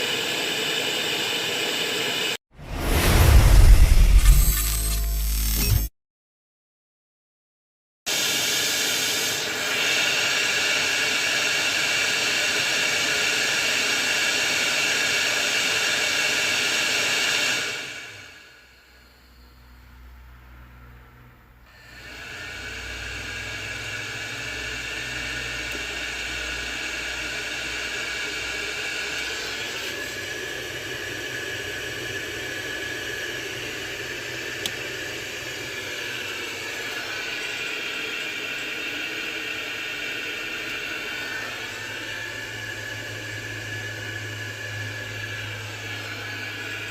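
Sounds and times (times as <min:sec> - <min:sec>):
boiler whirring: 0:21.8 - 0:46.9.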